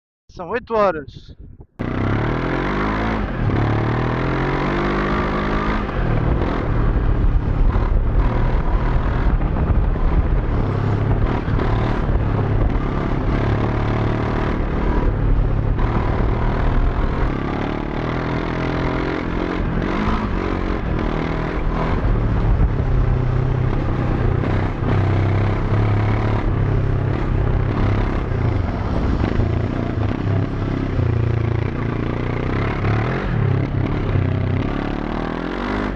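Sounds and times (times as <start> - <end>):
wind rush: 0.4 - 2.4, 5.7 - 13.6, 18.0 - 32.2
motorcycle engine revving: 1.8 - 35.9.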